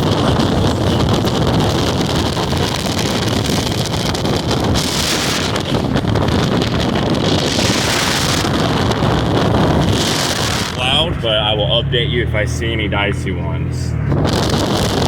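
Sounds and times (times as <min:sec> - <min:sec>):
vehicle driving on snowy road: 0:00.0 - 0:15.0
wind rushing: 0:00.0 - 0:15.0.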